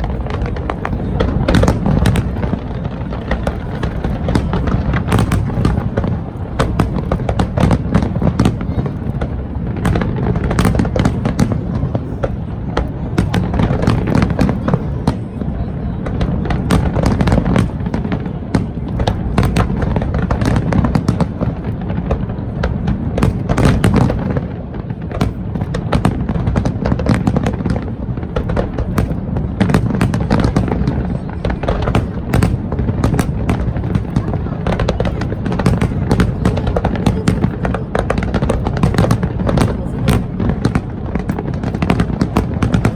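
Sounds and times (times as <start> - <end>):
fireworks bangs and crackles: 0.0 - 42.9.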